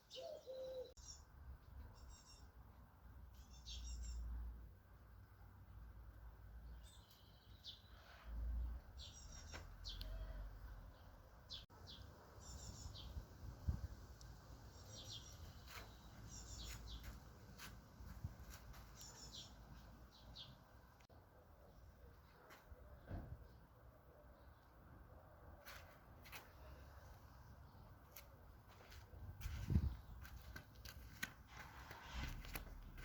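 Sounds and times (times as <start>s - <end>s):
small songbirds chirping: 0.0s - 2.7s, 3.3s - 4.6s, 6.4s - 22.5s.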